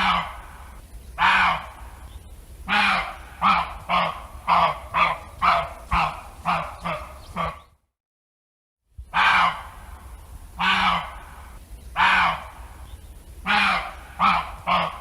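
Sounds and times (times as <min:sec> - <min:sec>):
animal calling: 0:00.0 - 0:01.9, 0:02.7 - 0:07.8, 0:10.6 - 0:15.0.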